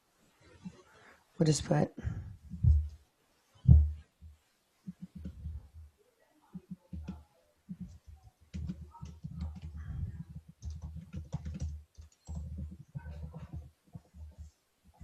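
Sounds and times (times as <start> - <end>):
laptop keyboard typing: 4.9 - 5.5, 6.6 - 15.0.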